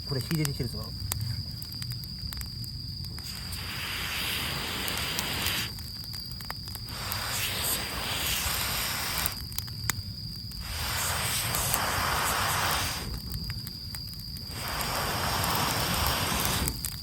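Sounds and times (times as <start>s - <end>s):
campfire crackling: 0.0s - 17.0s
person blowing on a fire: 3.2s - 5.9s, 6.7s - 9.6s, 10.5s - 13.4s, 14.4s - 17.0s.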